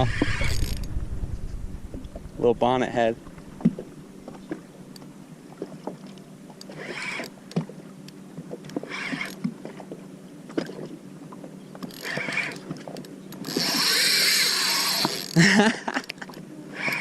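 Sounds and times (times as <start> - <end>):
knocks and clicks on a boat: 3.2 - 13.8.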